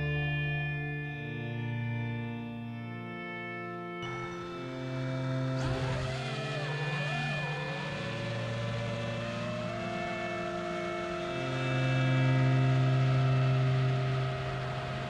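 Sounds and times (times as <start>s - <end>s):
background music: 0.0s - 15.0s
quadcopter motors whining: 4.3s - 15.0s.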